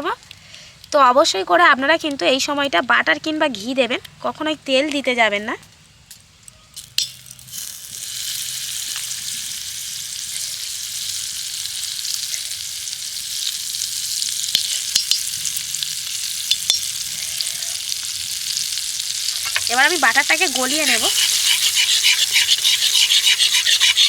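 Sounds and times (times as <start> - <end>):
butter sizzling in a pan: 6.8 - 24.0.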